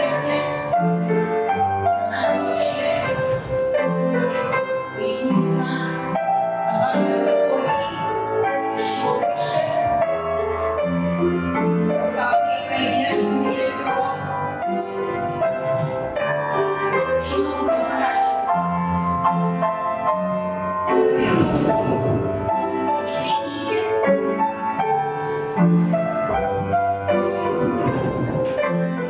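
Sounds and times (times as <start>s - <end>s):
piano music: 0.0s - 29.0s.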